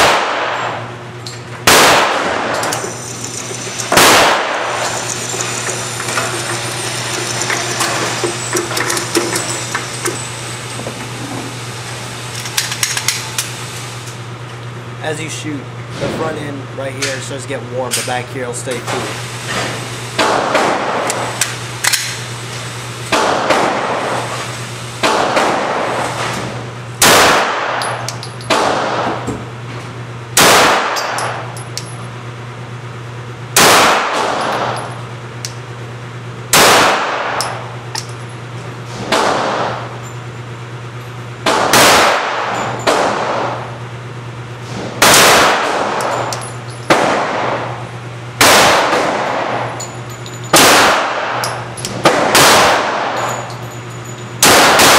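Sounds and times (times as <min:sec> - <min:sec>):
pistol shots with echo: 0:00.0 - 0:00.8, 0:01.6 - 0:02.6, 0:03.9 - 0:04.6, 0:27.0 - 0:27.8, 0:30.4 - 0:31.2, 0:33.6 - 0:34.4, 0:36.5 - 0:37.4, 0:41.4 - 0:43.5, 0:45.0 - 0:45.9, 0:48.4 - 0:49.6, 0:50.5 - 0:51.4, 0:52.0 - 0:53.2, 0:54.4 - 0:54.9
low hum: 0:00.0 - 0:16.9.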